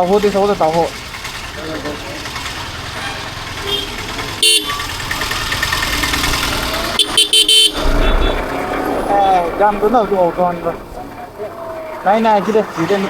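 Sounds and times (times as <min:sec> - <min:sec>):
road and wind noise: 0:00.0 - 0:13.0
vehicle horn honking: 0:02.8 - 0:08.7.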